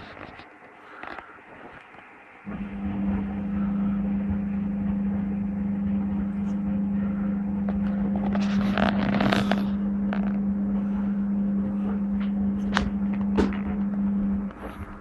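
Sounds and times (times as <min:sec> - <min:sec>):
washing machine hum: 0:00.0 - 0:15.0
washing machine rush of noise: 0:00.0 - 0:15.0.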